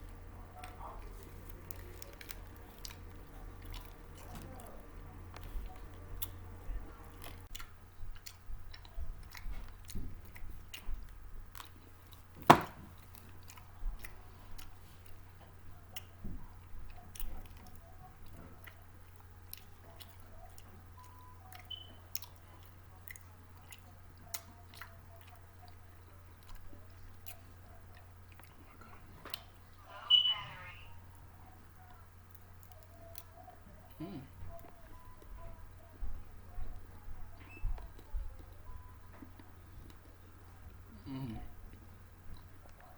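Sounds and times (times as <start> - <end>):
person chewing crunchy snacks: 0.2 - 10.9.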